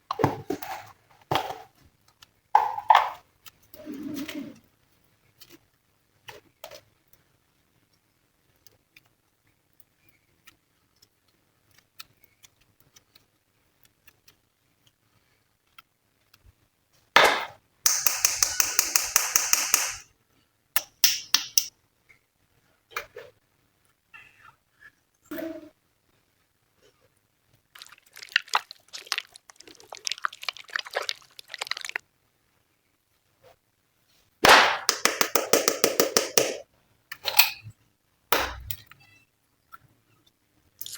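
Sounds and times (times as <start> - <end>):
slime squeezed by hand: 27.8 - 32.0.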